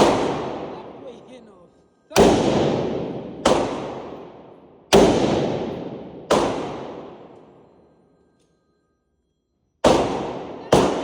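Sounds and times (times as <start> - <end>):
gunshots echoing: 0.0 - 1.3, 2.2 - 7.6, 9.8 - 11.0.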